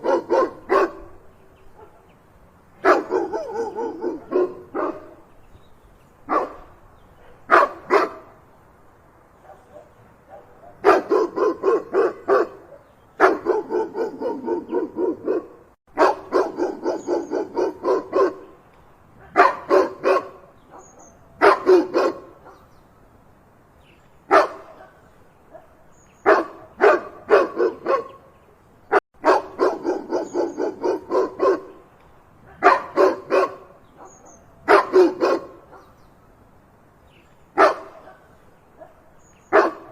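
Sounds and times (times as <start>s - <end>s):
dog barking loudly: 0.0s - 1.2s, 2.8s - 5.2s, 6.3s - 6.7s, 7.3s - 8.3s, 9.4s - 18.6s, 19.2s - 22.6s, 24.3s - 28.3s, 29.2s - 31.8s, 32.4s - 36.0s, 37.6s - 39.9s.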